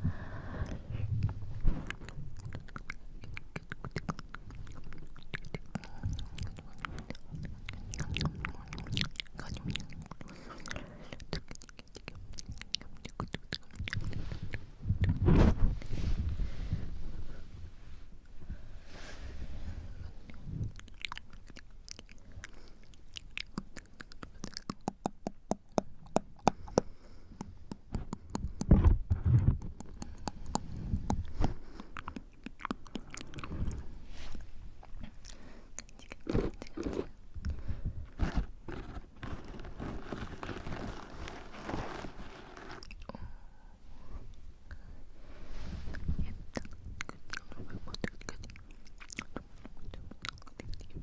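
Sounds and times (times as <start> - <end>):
wet tongue and lip clicks: 1.2 - 15.2, 20.3 - 33.8, 34.8 - 37.7, 45.9 - 51.0
breath puffs hitting microphone: 14.0 - 20.7.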